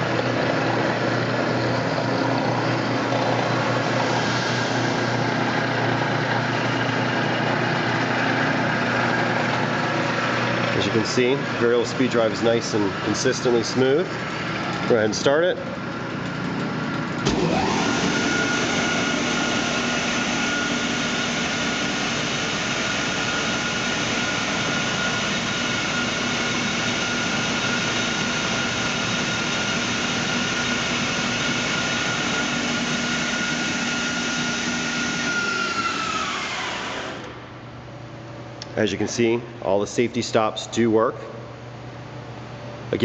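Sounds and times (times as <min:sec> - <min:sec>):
belt sander motor whining: 0:16.5 - 0:37.5.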